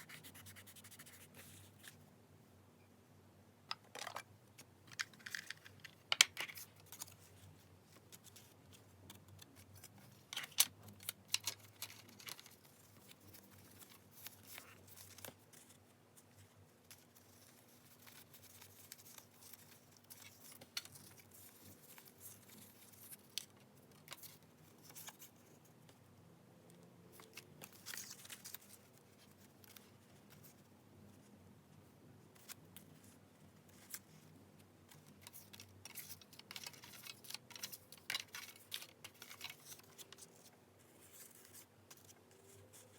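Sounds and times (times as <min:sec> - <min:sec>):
paper rustling: 0:34.9 - 0:42.9.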